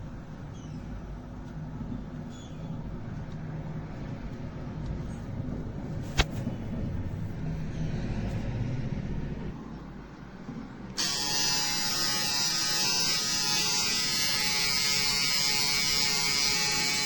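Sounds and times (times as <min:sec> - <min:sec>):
steady low rumble: 0:00.0 - 0:11.0.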